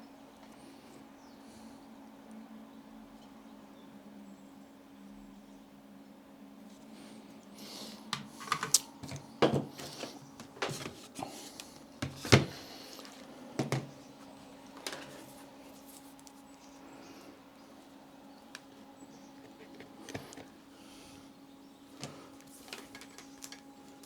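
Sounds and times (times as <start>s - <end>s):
faint steady hum: 0.0s - 24.0s
tools clicking on a workbench: 8.2s - 11.0s.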